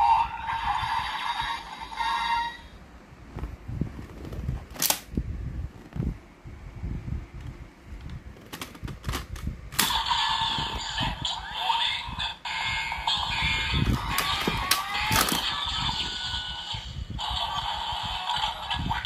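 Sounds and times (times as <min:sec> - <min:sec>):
toy electronic sound effect: 0:00.0 - 0:02.7, 0:09.8 - 0:19.0.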